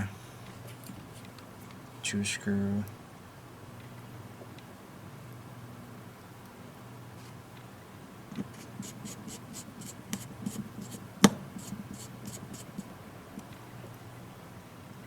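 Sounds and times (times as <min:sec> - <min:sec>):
sharp tap: 0:11.2 - 0:11.6.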